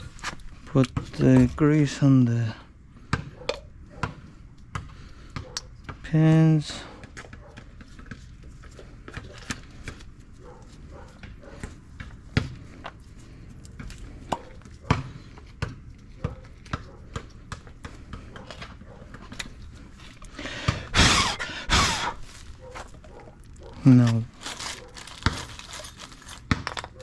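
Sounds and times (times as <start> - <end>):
rustling burst: 20.9 - 22.6.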